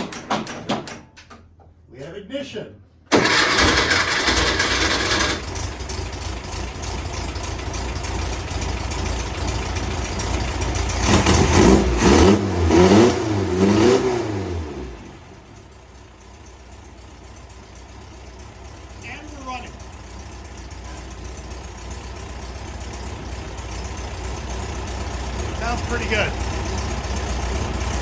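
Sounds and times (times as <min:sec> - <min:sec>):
engine running and revving: 0:10.6 - 0:15.4.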